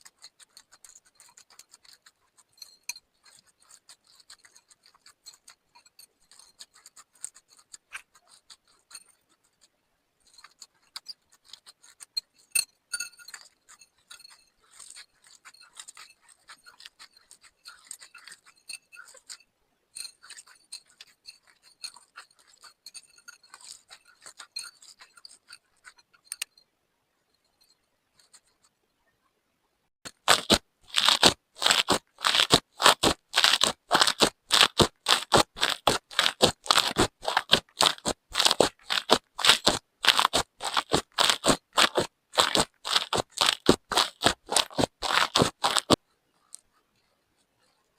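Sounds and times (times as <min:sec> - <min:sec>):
slime with beads crackling: 0:13.2 - 0:19.4, 0:20.2 - 0:26.0, 0:30.1 - 0:46.6.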